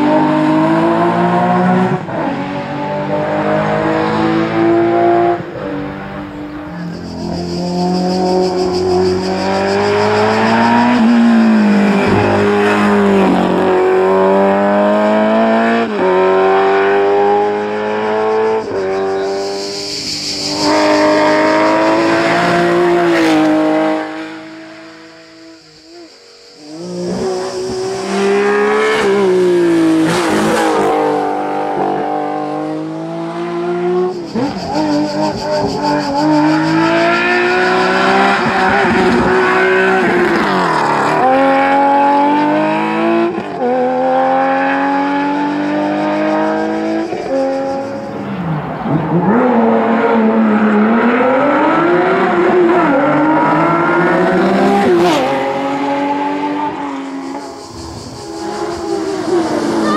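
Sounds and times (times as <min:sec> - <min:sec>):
rally car engines revving: 0:00.0 - 0:59.9
tyre squeal: 0:18.1 - 0:22.5, 0:57.3 - 0:59.9.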